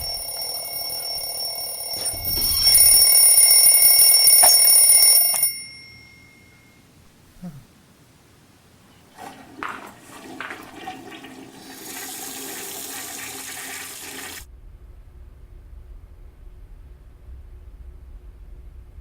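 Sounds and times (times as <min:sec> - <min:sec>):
low rumble: 0:14.5 - 0:19.0.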